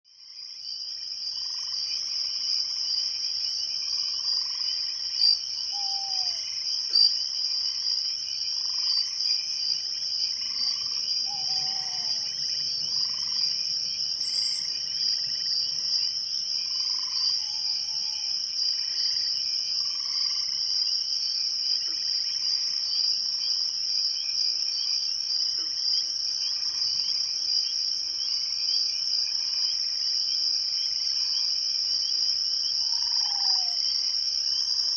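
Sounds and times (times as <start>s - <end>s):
crickets trilling: 0.2s - 34.9s
frogs calling: 3.5s - 7.4s, 8.5s - 21.1s, 32.7s - 34.6s.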